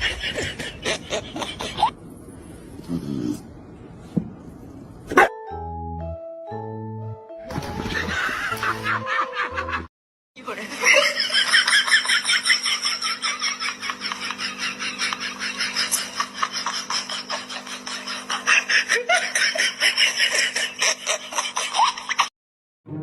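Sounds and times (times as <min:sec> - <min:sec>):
high-pitched laughter: 0:10.8 - 0:22.3.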